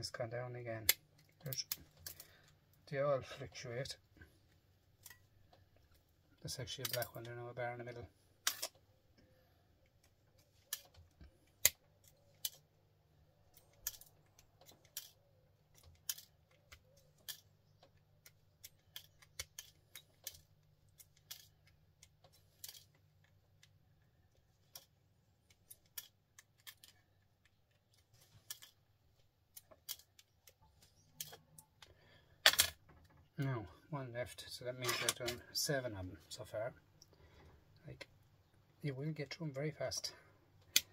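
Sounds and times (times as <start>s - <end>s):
cable connectors clicking and snapping: 0.8s - 2.8s, 6.7s - 7.4s, 8.4s - 33.3s, 40.6s - 40.9s.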